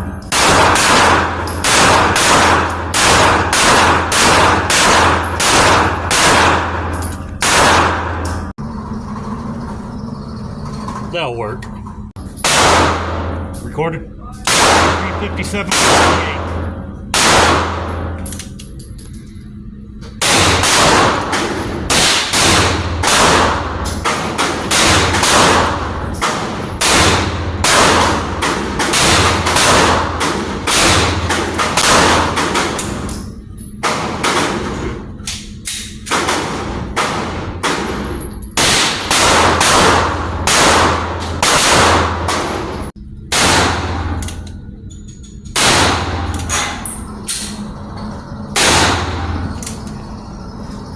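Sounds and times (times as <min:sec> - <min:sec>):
handgun shots: 0:00.3 - 0:06.8, 0:07.4 - 0:08.2, 0:14.5 - 0:16.4, 0:38.6 - 0:42.6.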